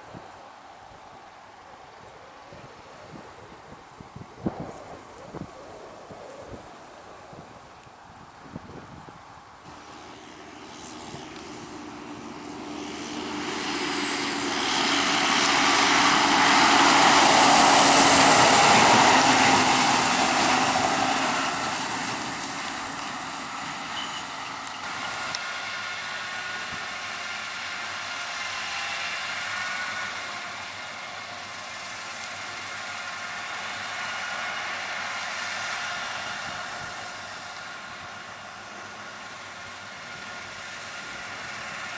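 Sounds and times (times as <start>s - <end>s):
high turbo whistle: 9.7s - 25.4s
diesel engine passing: 9.7s - 30.6s.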